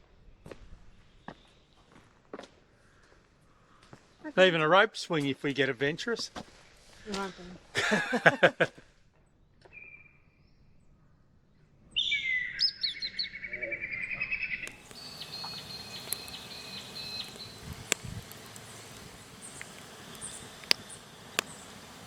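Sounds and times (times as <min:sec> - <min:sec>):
steady background hiss: 0:07.8 - 0:08.7, 0:14.7 - 0:22.0
birds chirping rapidly: 0:12.0 - 0:22.0
faint bird notes: 0:12.1 - 0:22.0.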